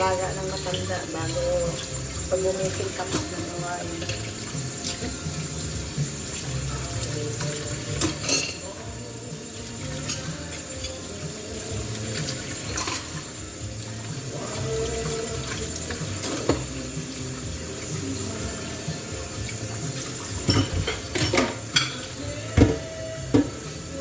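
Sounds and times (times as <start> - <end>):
tap water running into sink: 0.0 - 24.0
dishes clinking and knocking: 7.4 - 8.9, 12.1 - 13.4, 14.8 - 16.8, 19.4 - 23.7.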